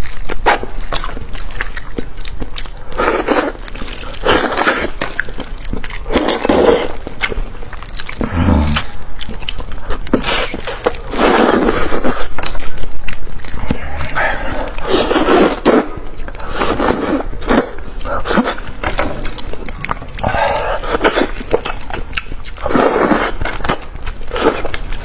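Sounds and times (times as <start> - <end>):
person chewing wetly: 0.0 - 25.0
sucking slurps: 8.0 - 12.3.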